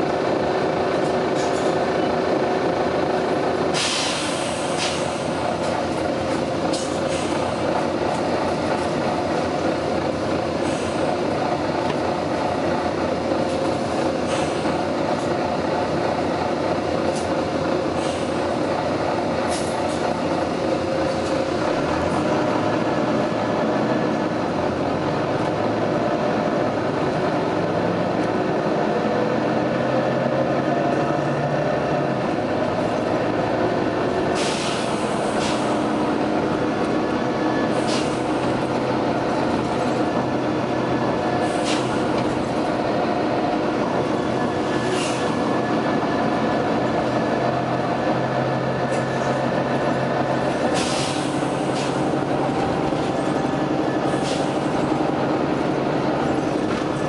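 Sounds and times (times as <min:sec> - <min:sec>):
bus engine drone: 0:00.0 - 0:57.0
compressed air hisses: 0:03.8 - 0:05.2, 0:34.4 - 0:35.7, 0:50.8 - 0:52.0.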